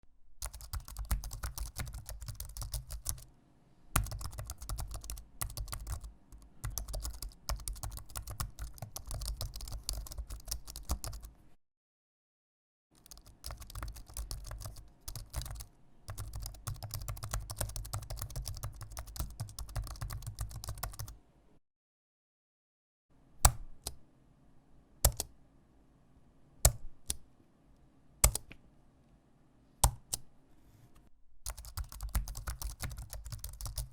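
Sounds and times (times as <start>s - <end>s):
mechanical keyboard typing: 0.4s - 3.3s, 4.0s - 11.3s, 13.0s - 21.2s, 25.1s - 25.3s, 28.2s - 28.5s, 31.5s - 33.9s.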